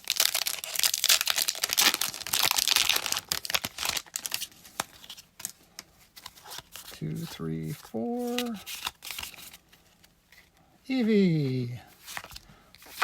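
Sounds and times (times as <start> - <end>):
foil wrapper crinkling and tearing: 0.0 - 5.6.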